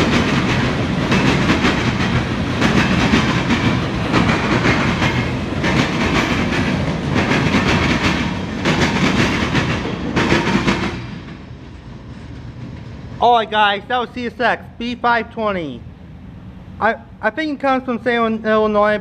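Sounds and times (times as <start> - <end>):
train wheels clattering over rail joints: 0.0 - 13.1.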